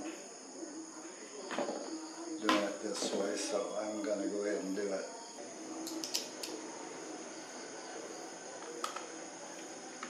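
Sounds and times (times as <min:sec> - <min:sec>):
faint steady hiss: 0:00.0 - 0:10.0
small tools clicking and tapping: 0:05.9 - 0:06.6.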